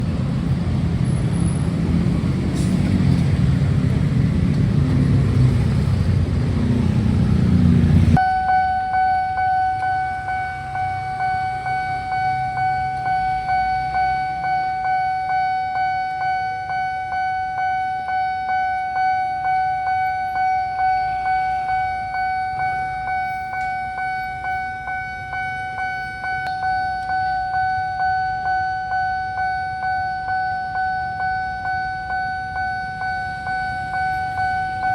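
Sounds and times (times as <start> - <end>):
level crossing alarm pulsing tone: 8.2 - 34.9.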